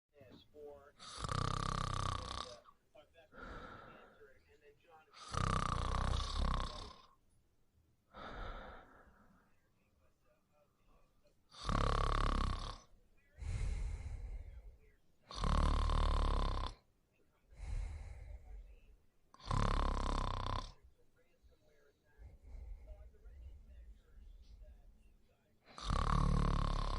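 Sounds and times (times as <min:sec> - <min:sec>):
quiet breath: 0:00.2 - 0:07.3, 0:08.1 - 0:26.9
person snoring: 0:01.0 - 0:02.7, 0:03.4 - 0:04.2, 0:05.2 - 0:07.2, 0:08.2 - 0:09.3, 0:11.5 - 0:16.9, 0:17.5 - 0:18.8, 0:19.4 - 0:20.8, 0:25.7 - 0:26.9.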